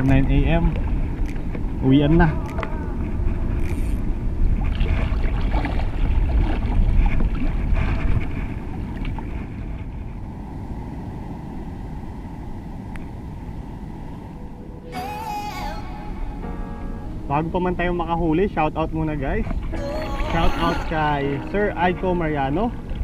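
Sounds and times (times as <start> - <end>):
wind buffeting microphone: 0.0 - 15.0
sea water sloshing: 4.4 - 10.1.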